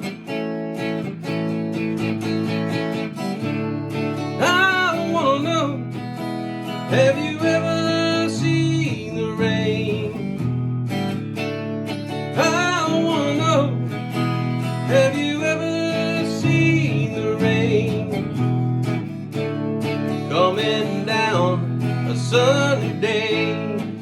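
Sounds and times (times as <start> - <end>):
acoustic guitar strumming: 0.0 - 24.0
person singing: 4.1 - 6.0, 6.6 - 10.4, 12.2 - 18.6, 19.9 - 24.0.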